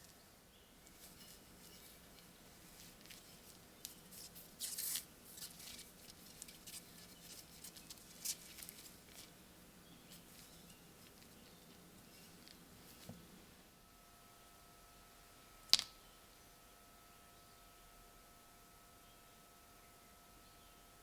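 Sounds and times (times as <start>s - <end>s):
scratching and tapping handling noises: 0.0s - 9.4s, 10.0s - 13.4s
rustling scrape: 0.8s - 9.4s.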